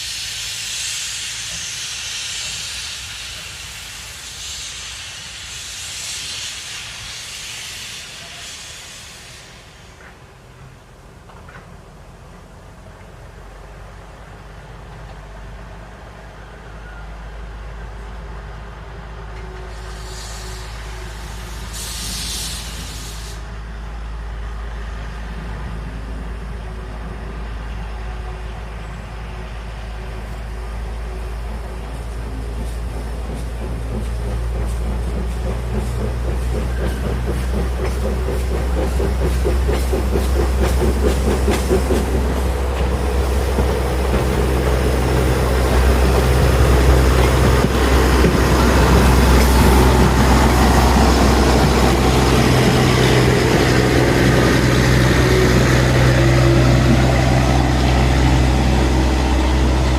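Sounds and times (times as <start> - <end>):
train engine drone: 0.0 - 59.9
short hisses: 19.7 - 23.5
train wheels clattering: 31.5 - 59.9.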